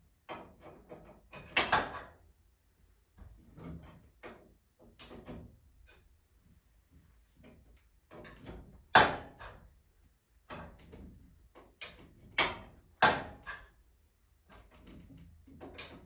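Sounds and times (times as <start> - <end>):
sharp knocks and clatters: 10.5 - 13.8, 14.5 - 16.0.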